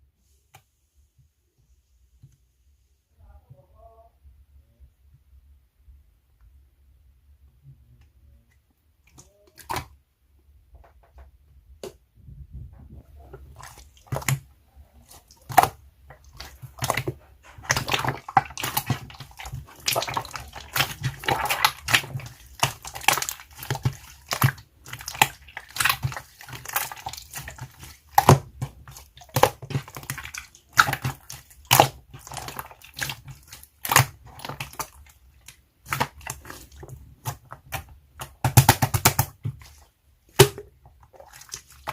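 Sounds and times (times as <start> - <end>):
slime squelching: 9.0 - 10.0, 12.8 - 41.9
slime popping and crackling: 13.2 - 14.4, 15.0 - 41.9.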